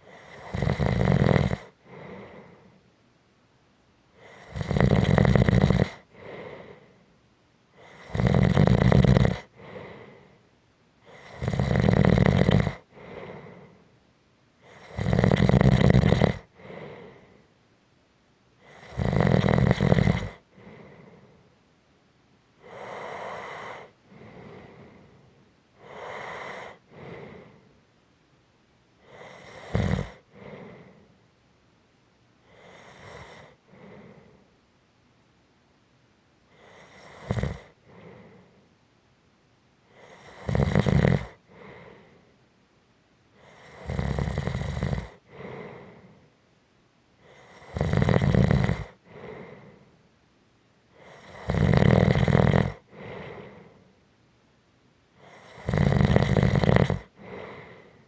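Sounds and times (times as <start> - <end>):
person snoring: 0.1 - 2.7, 4.2 - 6.8, 7.8 - 10.2, 11.1 - 13.8, 14.7 - 17.4, 18.7 - 21.4, 22.6 - 25.2, 25.8 - 27.6, 29.0 - 31.0, 32.5 - 34.4, 36.6 - 38.5, 40.0 - 42.0, 43.4 - 46.1, 47.3 - 49.8, 51.0 - 53.8, 55.2 - 58.0
sharp snort: 0.2 - 2.4, 11.1 - 13.4, 14.7 - 17.2, 18.7 - 20.9, 29.1 - 31.0, 32.5 - 34.3, 36.6 - 38.5, 40.0 - 42.0, 43.4 - 46.0, 47.3 - 49.7, 51.0 - 53.7, 55.2 - 57.9
soft breath out: 1.8 - 2.9, 6.1 - 7.2, 9.5 - 10.5, 12.9 - 14.0, 16.6 - 17.6, 20.5 - 21.6, 22.6 - 27.8, 30.2 - 31.2, 32.4 - 34.6, 37.7 - 38.8, 41.5 - 42.4, 45.2 - 46.4, 49.0 - 50.1, 52.9 - 54.0, 57.2 - 58.0.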